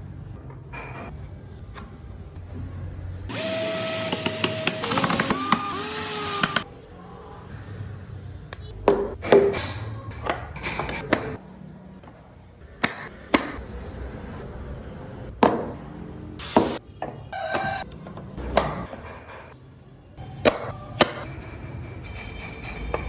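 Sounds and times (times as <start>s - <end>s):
power tool running: 3.3s - 6.6s.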